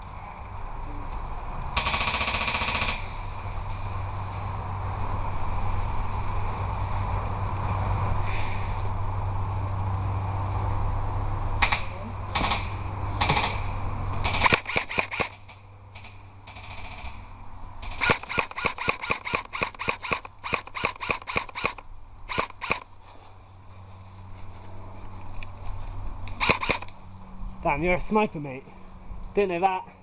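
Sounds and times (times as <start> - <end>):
airsoft gun shots: 11.6 - 22.9, 26.3 - 26.9.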